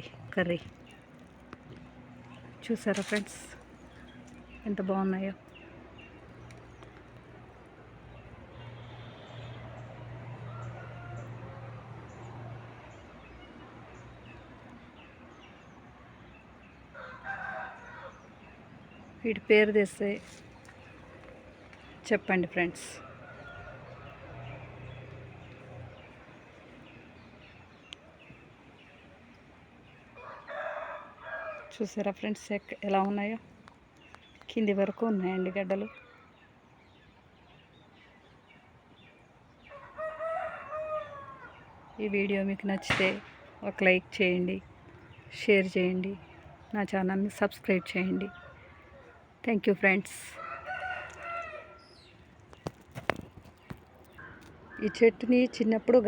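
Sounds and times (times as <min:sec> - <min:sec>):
rooster crowing: 0:17.0 - 0:18.2, 0:30.2 - 0:31.7, 0:39.7 - 0:41.6, 0:50.4 - 0:51.9.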